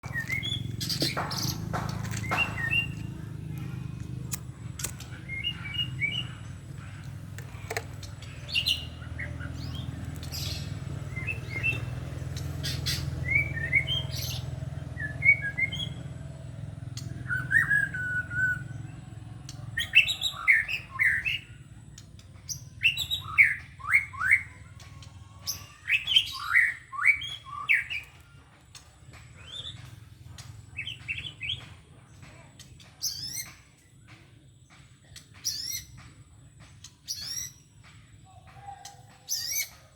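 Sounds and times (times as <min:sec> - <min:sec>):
steady low hum: 0:00.0 - 0:23.8
sharp clicks: 0:00.3 - 0:05.2
bird singing chirps and whistles: 0:08.4 - 0:16.1, 0:17.0 - 0:18.9, 0:19.8 - 0:21.7, 0:22.5 - 0:24.6, 0:25.5 - 0:28.2, 0:35.2 - 0:36.0, 0:37.0 - 0:37.8, 0:38.6 - 0:39.9.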